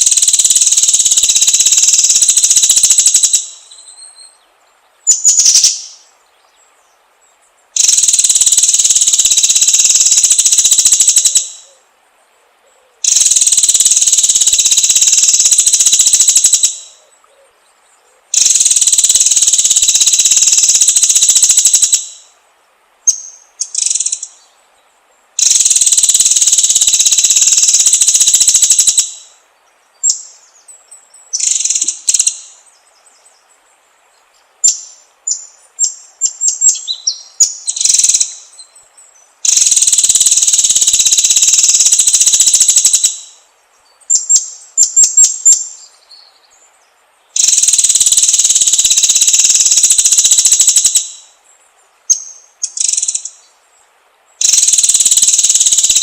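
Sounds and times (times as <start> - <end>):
bird rapid high trills: 0.0 - 4.3, 5.1 - 6.0, 7.8 - 11.8, 13.0 - 17.0, 18.3 - 22.3, 23.1 - 24.4, 25.4 - 29.4, 31.3 - 32.6, 34.6 - 38.8, 39.4 - 43.4, 47.4 - 51.4, 52.1 - 53.4, 54.4 - 56.0.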